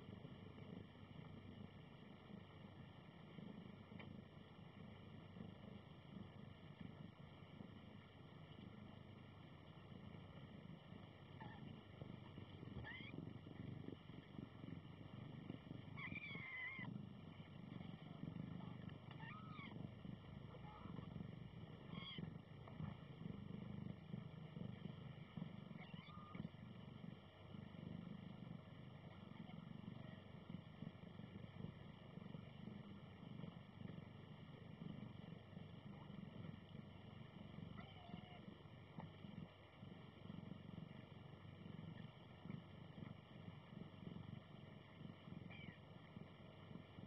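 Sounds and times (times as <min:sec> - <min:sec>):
low steady rumble: 0:00.0 - 0:47.0
kittens squeaking: 0:19.1 - 0:19.8.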